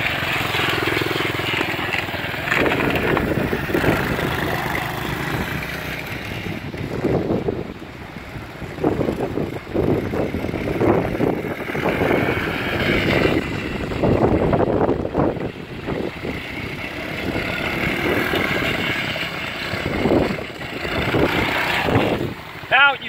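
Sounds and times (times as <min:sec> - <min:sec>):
small atv engine revving: 0:00.0 - 0:23.0
wind on microphone: 0:02.5 - 0:22.6.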